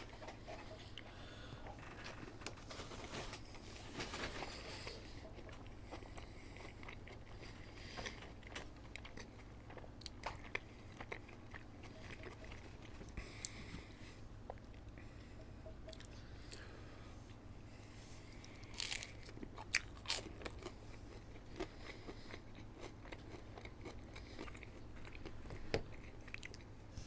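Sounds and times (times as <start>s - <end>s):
person chewing crunchy food: 4.4s - 15.2s, 18.2s - 27.0s.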